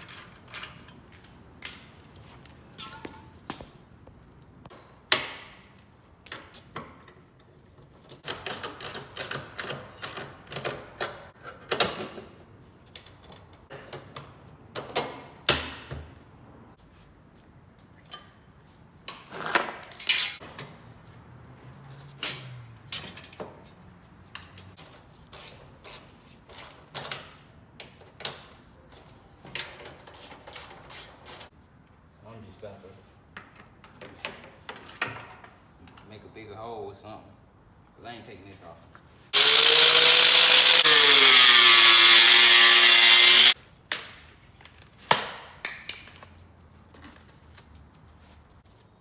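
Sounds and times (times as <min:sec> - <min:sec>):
hand tools clicking and knocking on metal: 0:08.0 - 0:12.2, 0:39.4 - 0:43.6.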